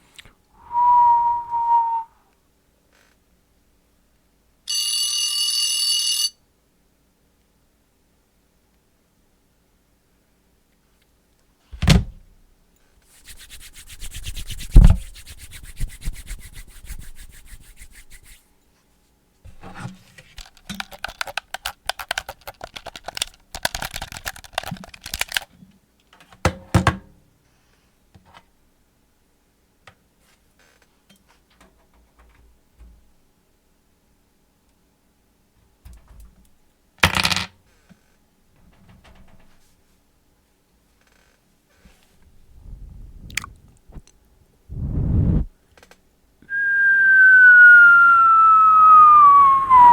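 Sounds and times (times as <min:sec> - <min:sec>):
rapid rattling mouth buzz: 0:13.2 - 0:18.4
mouth smacks: 0:43.0 - 0:44.2
man making mouth clicks: 0:43.2 - 0:44.1.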